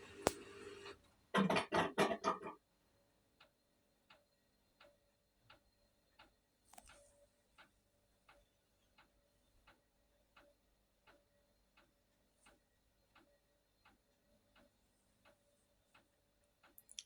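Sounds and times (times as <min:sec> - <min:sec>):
washing machine hum: 0:00.0 - 0:02.5
faint regular ticking: 0:03.4 - 0:17.0.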